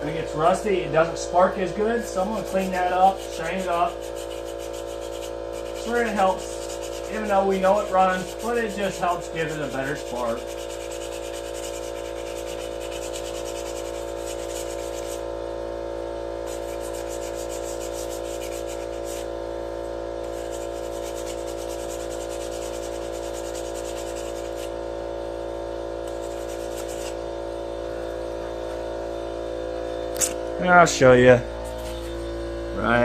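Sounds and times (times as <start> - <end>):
steady hum: 0.0 - 33.0
abrasive scrubbing of metal: 0.3 - 15.2.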